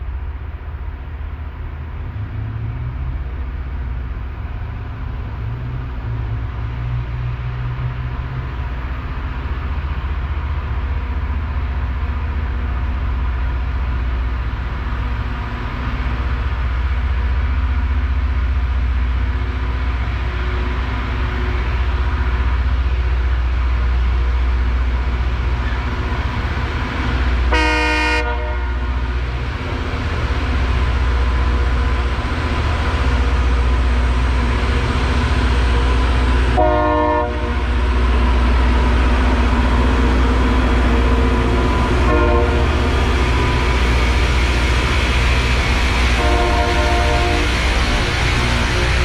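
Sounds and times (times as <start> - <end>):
rail grinder rumbling and grinding: 0.0 - 49.0
horn blast: 27.5 - 29.0, 36.6 - 37.6, 42.0 - 42.9, 46.1 - 49.0.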